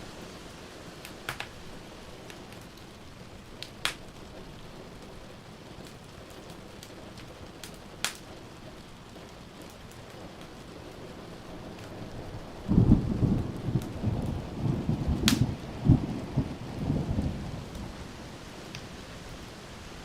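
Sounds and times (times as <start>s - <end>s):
rain hissing: 0.0s - 20.0s
wood fire crackling: 0.0s - 20.0s.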